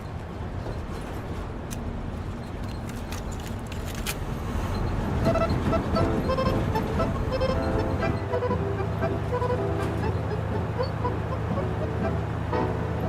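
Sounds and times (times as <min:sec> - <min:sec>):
low vehicle rumble: 0:00.0 - 0:13.0
tango music: 0:05.1 - 0:13.0.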